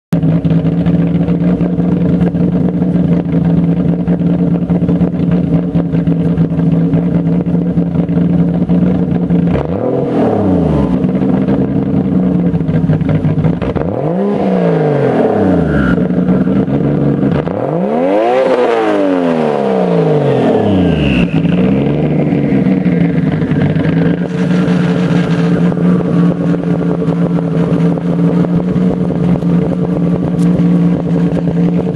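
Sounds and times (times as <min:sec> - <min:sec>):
car engine revving: 0:00.2 - 0:31.9.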